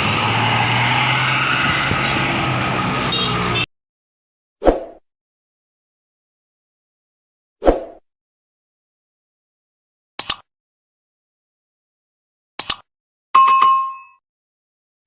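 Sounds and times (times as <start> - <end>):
bus engine running: 0.0 - 3.6
traffic noise: 0.0 - 3.7.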